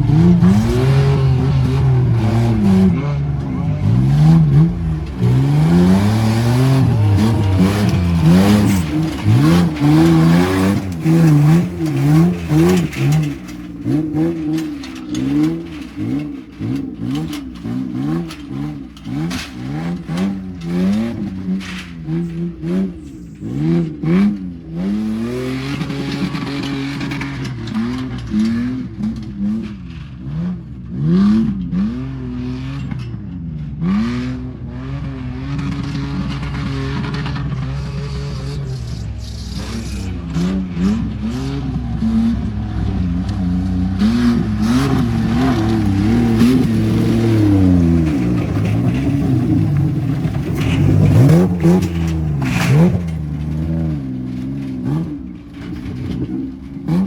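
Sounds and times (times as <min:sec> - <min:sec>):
knocks and clatter: 0:00.0 - 0:30.2, 0:44.0 - 0:57.0
off-road engine revving: 0:00.0 - 0:57.0.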